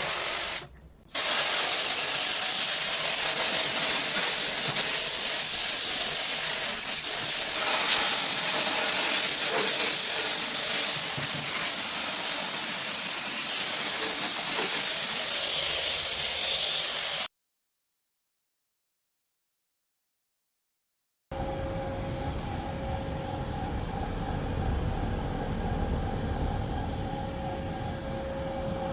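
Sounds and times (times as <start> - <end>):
pressurised spray hissing: 0.0 - 17.3.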